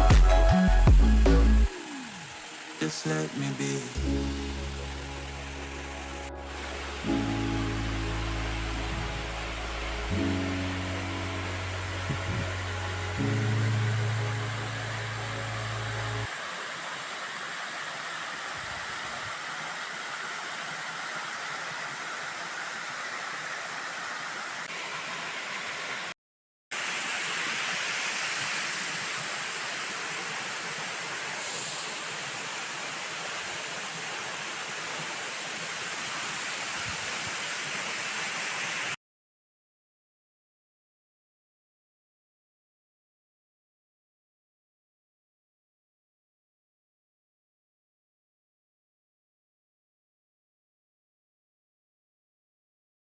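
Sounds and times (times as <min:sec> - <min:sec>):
song bass notes: 0:00.0 - 0:01.8, 0:02.8 - 0:16.3
waterfall rushing: 0:01.7 - 0:26.1, 0:26.8 - 0:39.0.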